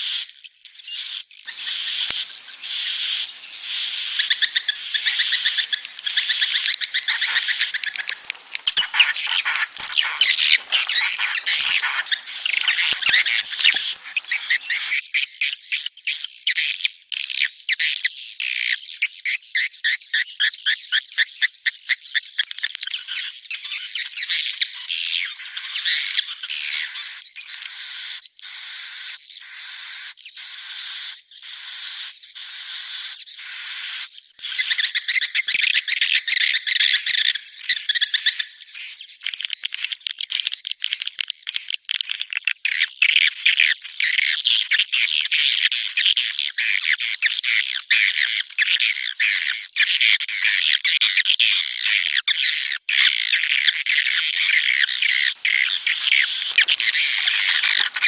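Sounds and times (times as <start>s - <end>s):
swiftlet twittering chirps: 1.5s - 15.0s, 54.0s - 58.0s.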